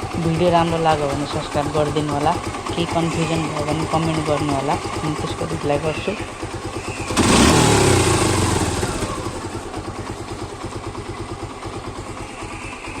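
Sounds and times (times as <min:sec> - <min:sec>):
motorcycle engine revving and idling: 0:00.0 - 0:13.0.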